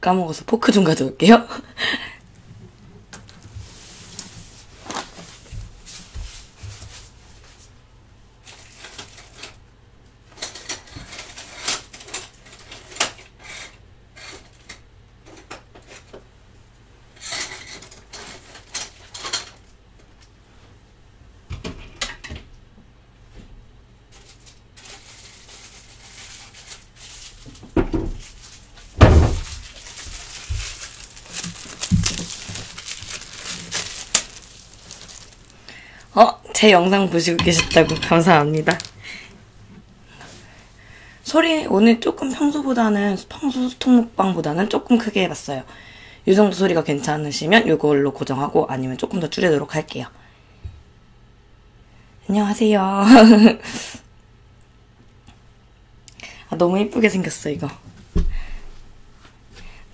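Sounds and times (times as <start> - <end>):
clicks and clatter of household things: 8.5 - 9.6, 10.3 - 16.2, 17.2 - 19.8
heavy thumps: 29.0 - 29.7.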